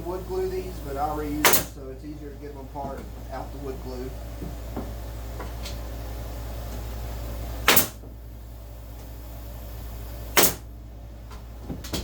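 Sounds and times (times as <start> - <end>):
steady low hum: 0.0 - 12.0
staple gun snap: 1.4 - 1.7, 7.7 - 8.0, 10.4 - 10.6.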